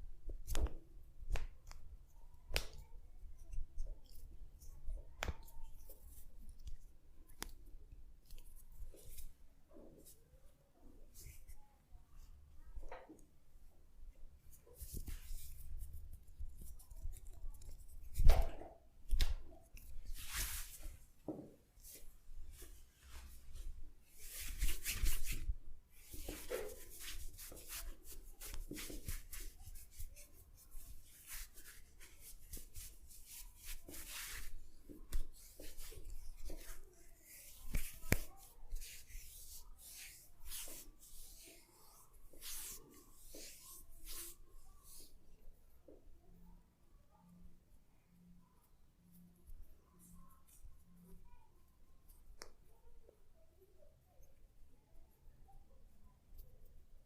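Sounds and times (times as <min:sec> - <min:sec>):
hands rubbing oiled skin and hair: 0:00.4 - 0:10.2, 0:14.4 - 0:21.2, 0:21.8 - 0:45.2.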